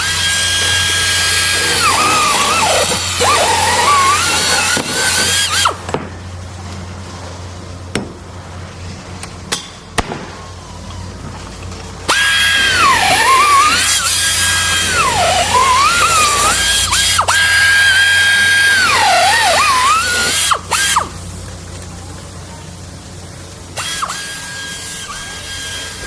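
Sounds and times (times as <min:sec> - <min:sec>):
electric drill whining: 0:00.0 - 0:05.8, 0:12.1 - 0:21.1
low hum: 0:00.0 - 0:26.0.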